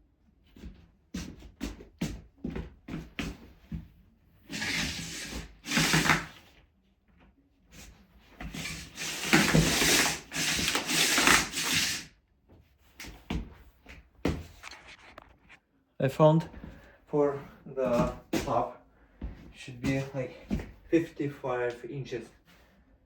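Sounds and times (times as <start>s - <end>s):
rubbing and scraping: 8.4s - 12.1s, 14.3s - 15.6s.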